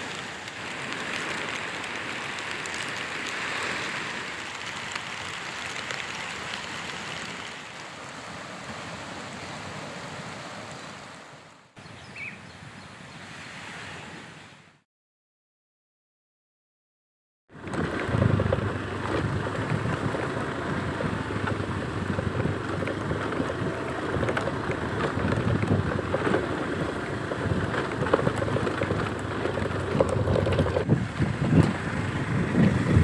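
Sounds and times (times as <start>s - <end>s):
wind buffeting the microphone: 17.6s - 33.0s.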